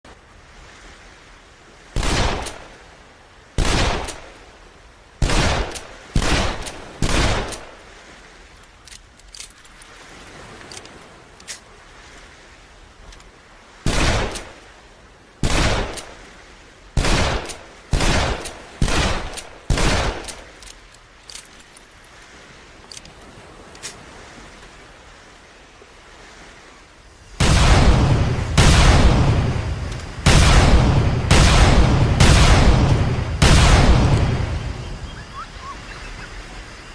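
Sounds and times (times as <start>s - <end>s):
faint clicks: 8.5s - 12.3s, 20.2s - 24.7s.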